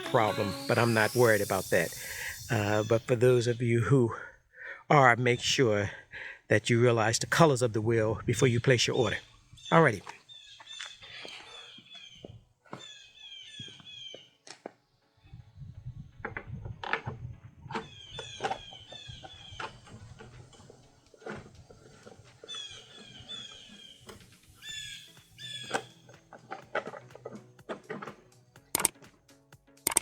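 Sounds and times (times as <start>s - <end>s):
high falling chirping squeaks: 0.0s - 3.6s, 22.4s - 26.0s
hands clicking and tapping on parts: 25.6s - 29.2s, 29.8s - 30.0s.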